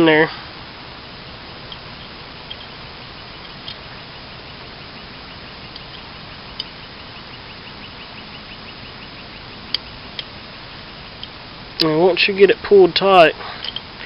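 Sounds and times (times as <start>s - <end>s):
steady hiss: 0.0s - 14.0s
faint rapid ticking: 0.8s - 14.0s
small parts clicking and tapping: 13.6s - 13.9s.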